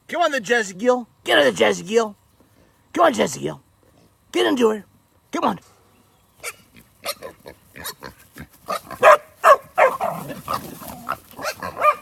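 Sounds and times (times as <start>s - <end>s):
pigs calling out: 6.4s - 12.0s
dogs barking: 8.7s - 12.0s.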